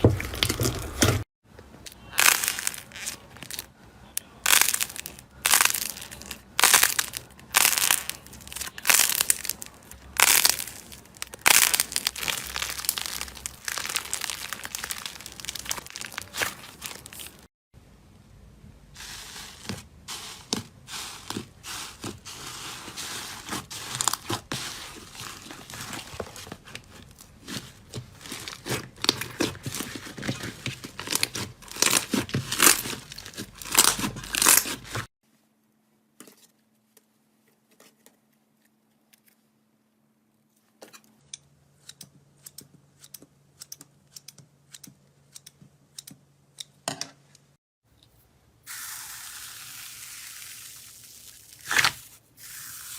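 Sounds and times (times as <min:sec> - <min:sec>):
slime crackling and popping: 0:02.1 - 0:03.7, 0:04.5 - 0:17.5.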